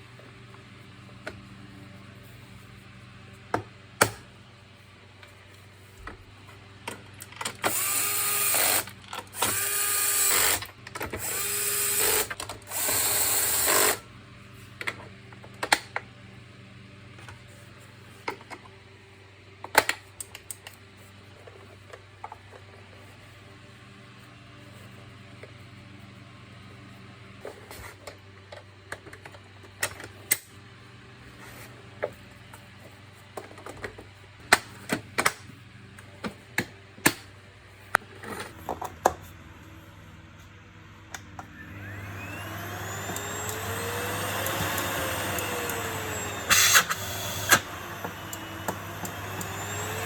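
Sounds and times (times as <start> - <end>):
vacuum cleaner motor whining: 7.6 - 14.0, 41.0 - 50.0.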